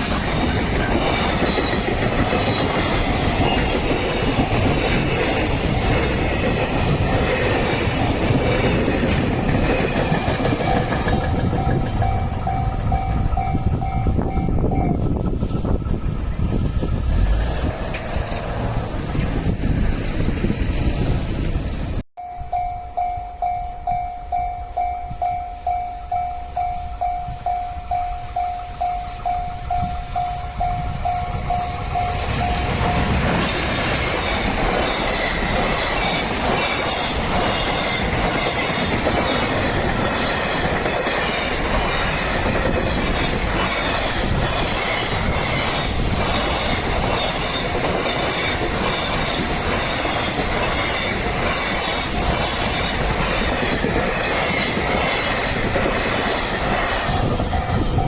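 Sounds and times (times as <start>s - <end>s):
wagon wheels clicking over rail joints: 0.0s - 13.0s, 31.3s - 58.0s
level crossing warning bell: 0.0s - 15.3s, 22.2s - 58.0s
freight train passing: 0.0s - 58.0s.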